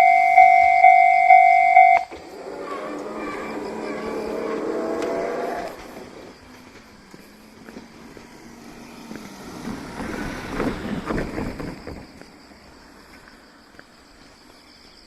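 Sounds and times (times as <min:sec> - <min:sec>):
level-crossing warning bell ringing: 0:00.0 - 0:02.2
vehicle rolling over crossing: 0:02.0 - 0:13.0.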